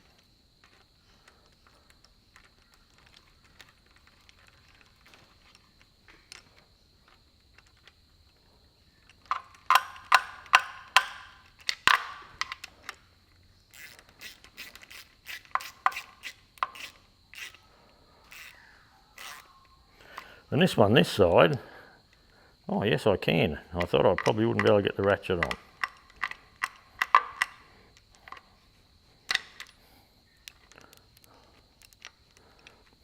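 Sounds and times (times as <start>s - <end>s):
hand ratchet clicking: 9.1s - 13.0s, 13.7s - 17.6s, 18.2s - 18.6s, 19.2s - 20.3s, 23.8s - 28.5s, 29.3s - 29.8s.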